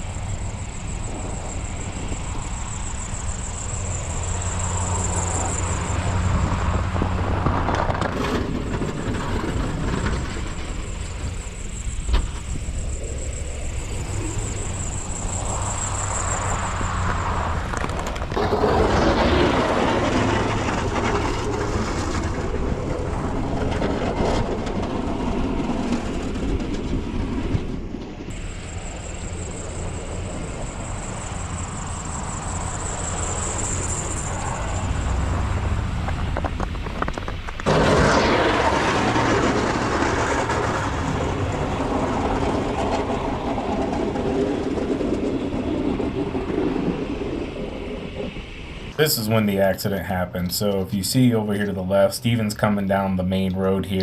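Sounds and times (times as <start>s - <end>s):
vehicle engine running: 0.0s - 26.5s.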